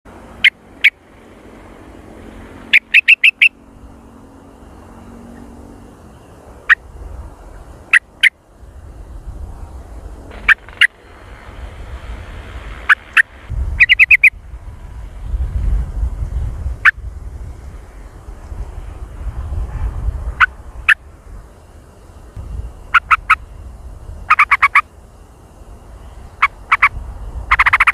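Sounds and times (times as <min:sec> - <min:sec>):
bird calling sharp notes: 0:02.7 - 0:03.6, 0:10.3 - 0:11.1, 0:12.8 - 0:14.4, 0:24.3 - 0:24.9
low background rumble: 0:05.7 - 0:27.9.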